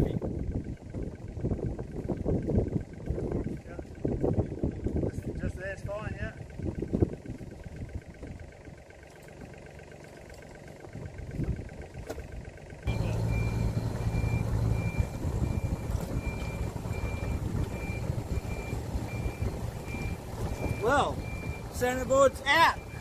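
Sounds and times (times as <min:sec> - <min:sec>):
truck engine idling: 0:00.0 - 0:23.0
reversing alarm beeping: 0:12.8 - 0:23.0.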